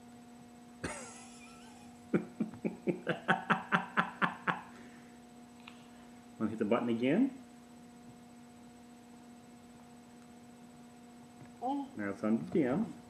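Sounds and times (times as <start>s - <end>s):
steady low hum: 0.0s - 13.0s
rhythmic laughter: 0.8s - 4.8s.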